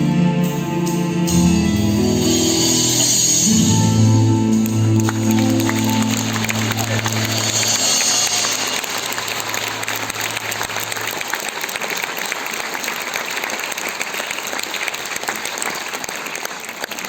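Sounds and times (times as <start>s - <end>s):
audience applauding: 4.6s - 17.0s.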